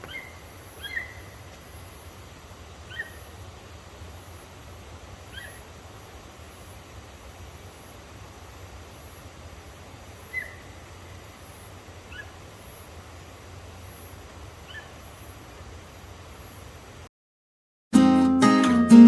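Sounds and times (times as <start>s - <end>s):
background hiss: 0.0s - 17.1s.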